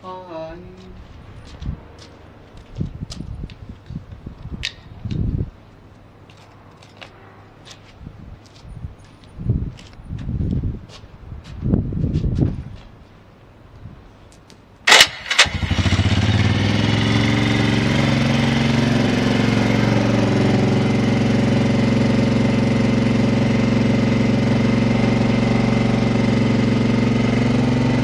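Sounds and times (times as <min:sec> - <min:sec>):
electric starter cranking: 0:14.9 - 0:16.7
motorcycle engine idling: 0:15.4 - 0:28.0.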